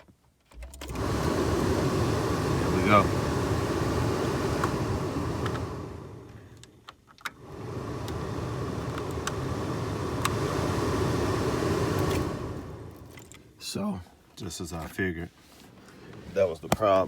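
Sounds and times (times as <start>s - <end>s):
blower fan rushing air: 0.7s - 13.8s.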